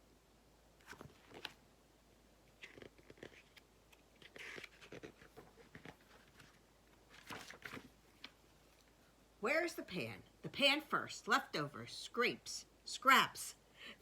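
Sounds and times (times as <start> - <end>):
paper pages rustling: 0.8 - 1.6, 2.5 - 8.8.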